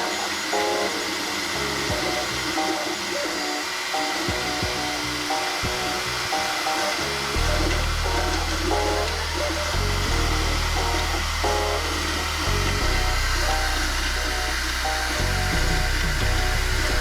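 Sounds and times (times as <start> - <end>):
background music with bass line: 7.0 - 17.0.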